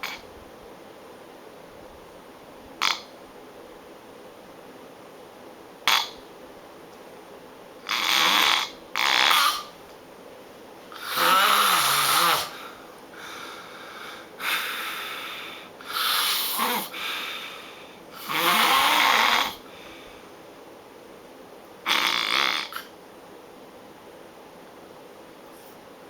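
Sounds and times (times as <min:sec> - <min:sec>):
person snoring loudly: 0:07.9 - 0:09.7, 0:11.0 - 0:12.8, 0:14.4 - 0:17.6, 0:18.2 - 0:19.7, 0:21.9 - 0:22.9.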